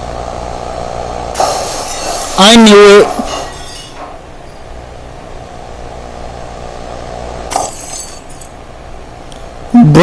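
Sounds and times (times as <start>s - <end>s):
light bulb smashing: 1.4s - 2.4s, 7.5s - 8.6s.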